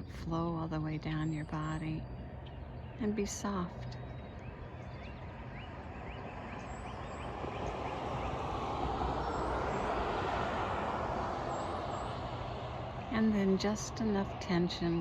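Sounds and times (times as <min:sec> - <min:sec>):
bird chirping: 0:00.0 - 0:08.5
car passing on a road: 0:04.0 - 0:15.0.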